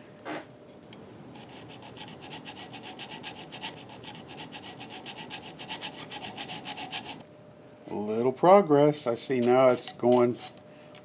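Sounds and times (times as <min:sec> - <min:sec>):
metal file rasping scrape: 0:01.3 - 0:07.2, 0:09.8 - 0:10.6.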